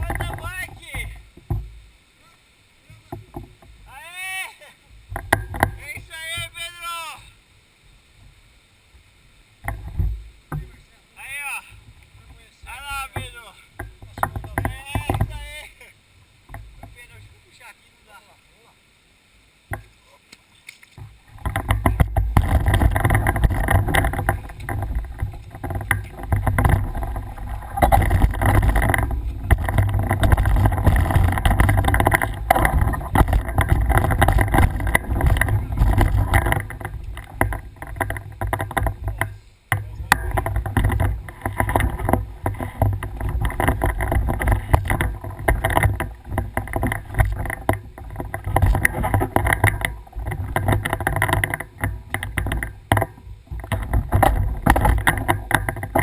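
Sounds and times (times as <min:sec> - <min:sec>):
mountain bike rattling on trail: 0:00.0 - 0:01.8, 0:05.1 - 0:07.2, 0:09.6 - 0:17.7, 0:20.8 - 0:56.0
wind buffeting microphone: 0:21.2 - 0:56.0.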